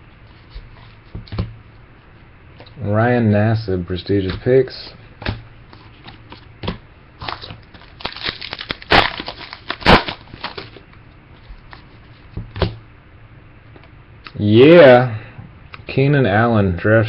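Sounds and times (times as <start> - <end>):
card pack wrapper crinkling: 7.2 - 10.8.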